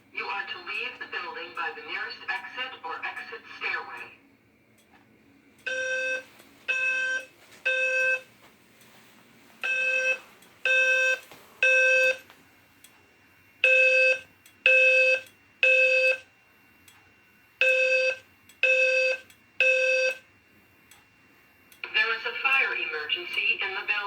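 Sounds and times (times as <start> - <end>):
fire alarm buzzy beeps: 5.6 - 8.3, 9.6 - 24.0.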